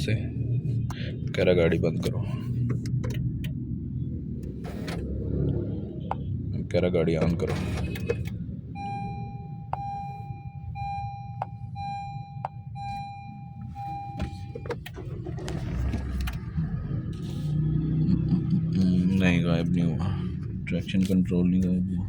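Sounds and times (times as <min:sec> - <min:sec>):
low rumble: 0:00.0 - 0:22.0
electronic beeps: 0:08.8 - 0:14.8.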